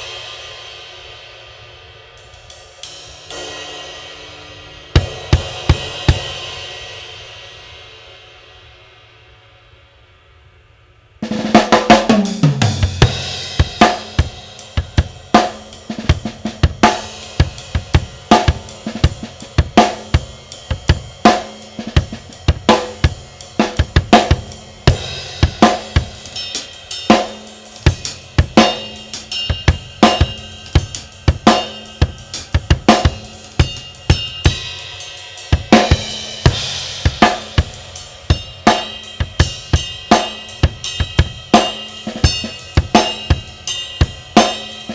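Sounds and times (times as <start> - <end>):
drum kit playing steady beat: 0.0 - 8.9, 11.2 - 44.9
ride cymbal ringing: 12.7 - 44.9.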